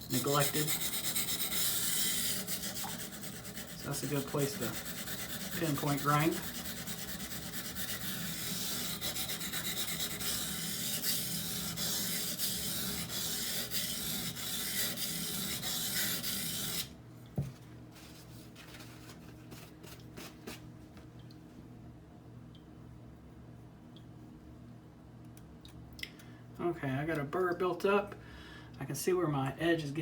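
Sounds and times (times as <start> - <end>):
knife grinding on water stone: 0.1 - 16.9.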